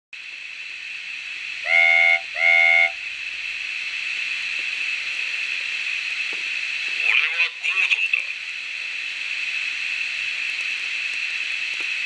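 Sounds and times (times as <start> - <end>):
steam hiss: 0.2 - 7.1
steam whistle toots: 1.6 - 3.0.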